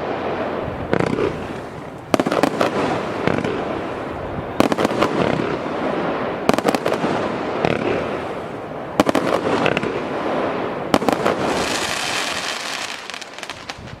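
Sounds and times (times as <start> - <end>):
firework bangs: 0.0 - 14.0
firework crackling: 0.0 - 14.0
hissing crackle: 9.3 - 14.0.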